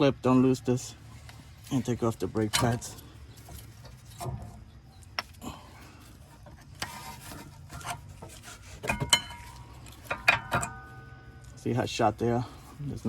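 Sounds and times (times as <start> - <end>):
metallic clicks and scrapes: 1.1 - 5.4, 6.0 - 11.7
sharp ringing metal clinks: 9.0 - 11.7.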